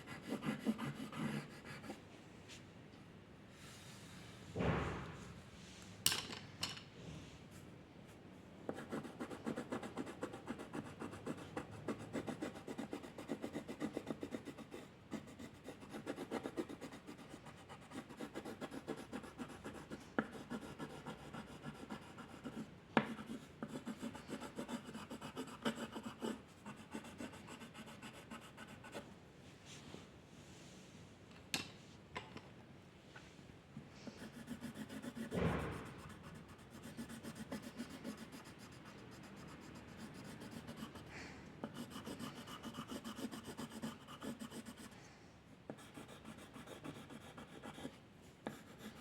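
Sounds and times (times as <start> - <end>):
pencil scratching on paper: 0.0 - 2.0, 8.7 - 29.0, 34.1 - 45.0, 45.7 - 49.0.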